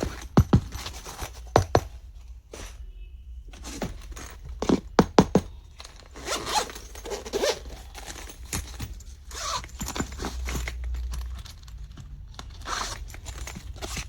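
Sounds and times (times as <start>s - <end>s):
zipper being pulled: 6.2s - 8.0s, 9.3s - 10.8s, 12.6s - 14.0s.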